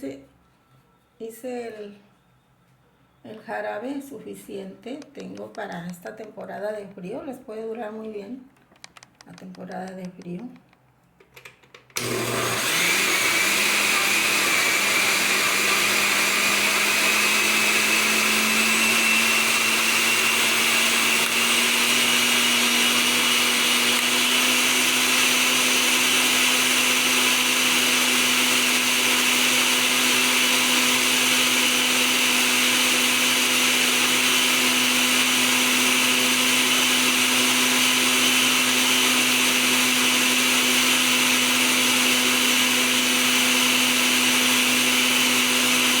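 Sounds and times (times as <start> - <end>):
blender running: 12.0 - 46.0.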